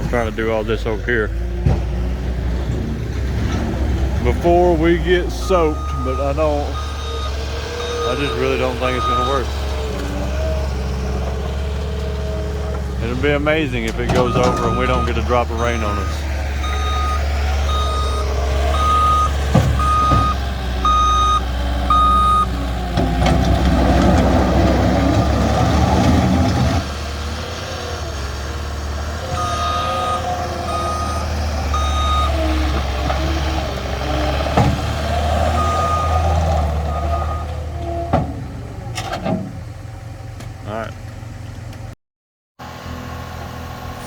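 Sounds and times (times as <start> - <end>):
loud rattling rumble: 0.0 - 36.9
diesel engine droning: 0.0 - 42.0, 42.6 - 44.0
reversing alarm beeping: 5.2 - 9.6, 14.1 - 22.6, 29.3 - 32.6, 35.5 - 36.3, 36.9 - 37.5.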